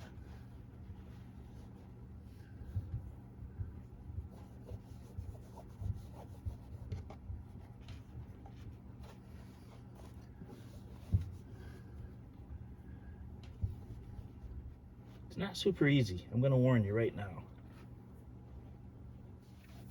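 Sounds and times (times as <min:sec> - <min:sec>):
hands rubbing lining: 0:00.0 - 0:11.8.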